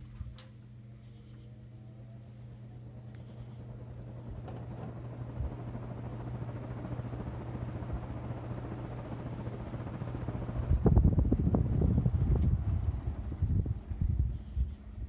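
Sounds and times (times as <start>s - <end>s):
fan motor humming: 0.0s - 15.0s
wind buffeting microphone: 10.2s - 15.0s.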